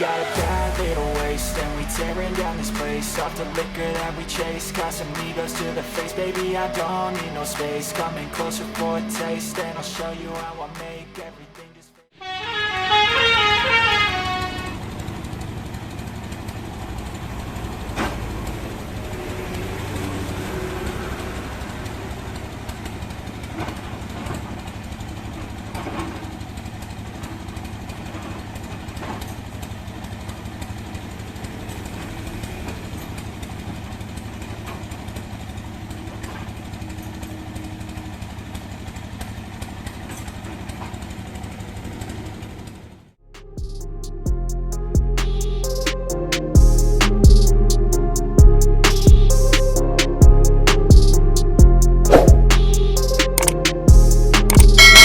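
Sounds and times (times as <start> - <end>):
stepped electronic tones: 52.2 - 53.8, 54.4 - 55.0
sharp clicks: 53.1 - 53.8, 54.4 - 55.0.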